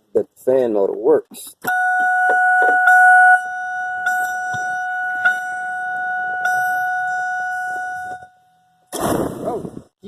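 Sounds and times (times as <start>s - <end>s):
car warning chime: 1.7s - 8.9s.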